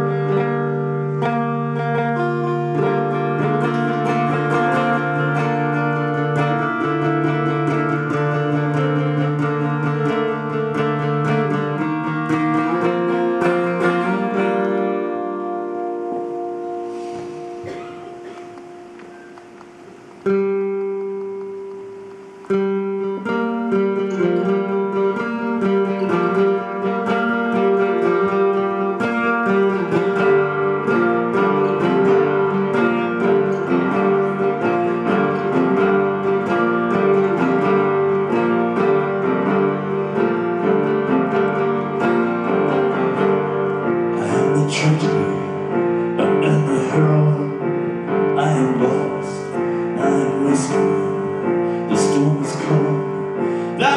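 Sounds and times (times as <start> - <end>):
band playing guitar and keyboard: 0.0 - 53.9.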